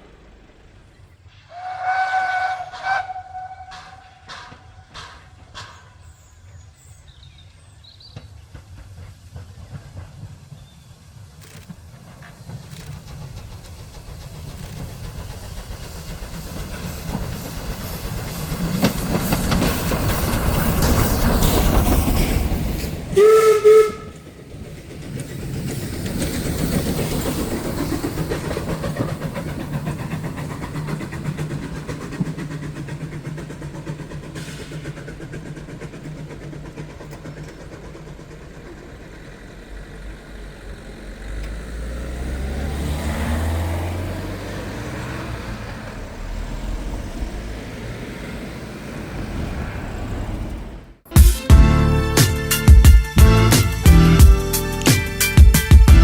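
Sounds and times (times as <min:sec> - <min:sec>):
steam train rumble and clatter: 0:00.0 - 0:56.0
steam train whistle blast: 0:01.5 - 0:05.8, 0:23.1 - 0:24.3.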